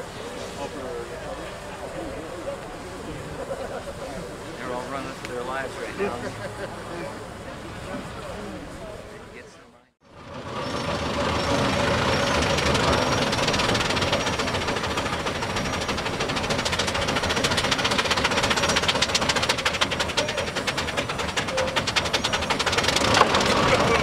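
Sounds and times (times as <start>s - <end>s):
steam engine rattling knock: 10.4s - 24.0s.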